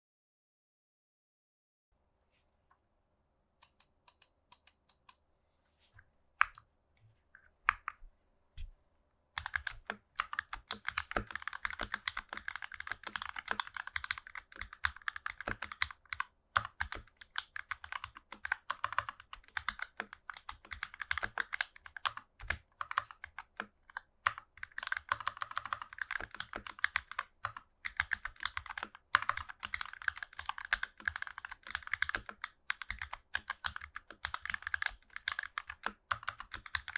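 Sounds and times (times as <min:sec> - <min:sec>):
mechanical keyboard typing: 0:09.4 - 0:36.9.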